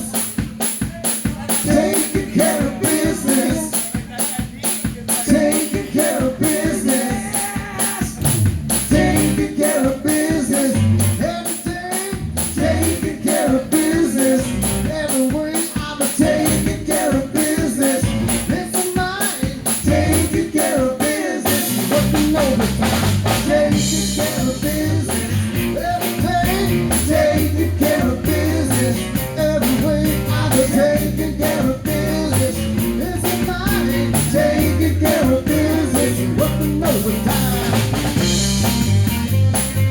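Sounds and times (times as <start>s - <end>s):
fast hi-hat: 0.0s - 39.9s
live rock band playing: 0.0s - 39.9s
bass fills: 8.0s - 11.4s, 12.2s - 15.2s, 16.2s - 18.7s, 19.7s - 20.6s, 21.4s - 39.9s.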